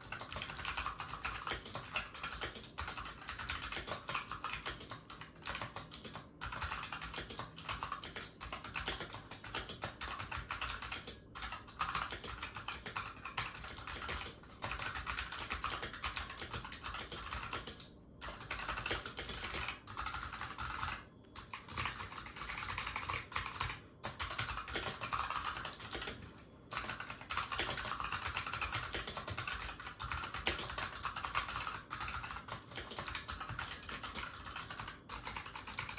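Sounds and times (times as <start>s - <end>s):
clicky keyboard typing: 0.0s - 35.9s.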